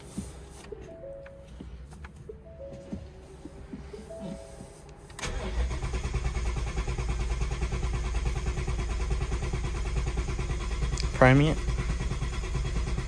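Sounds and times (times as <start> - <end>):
car engine starting and running: 0.2 - 13.0.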